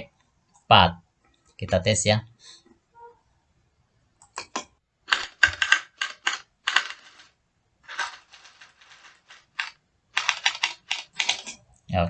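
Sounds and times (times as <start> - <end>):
typewriter keys clacking: 5.1 - 7.2, 7.9 - 11.6.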